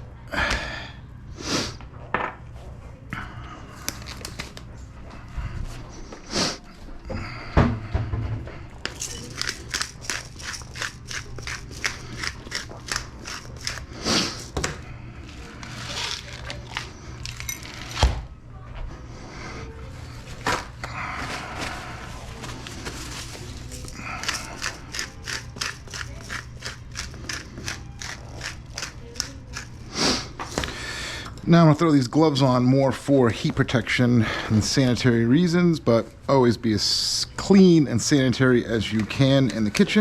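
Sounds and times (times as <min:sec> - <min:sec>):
steady low hum: 0:00.0 - 0:40.0
containers clicking and knocking: 0:08.8 - 0:13.9
spice shakers rattling: 0:08.8 - 0:13.9, 0:23.0 - 0:29.8.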